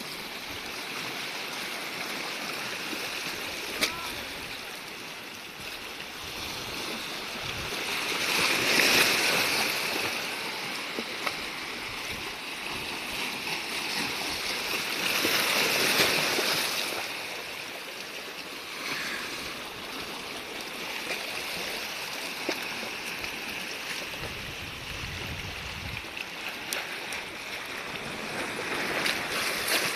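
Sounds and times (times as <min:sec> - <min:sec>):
sea waves washing in: 0:00.0 - 0:29.9.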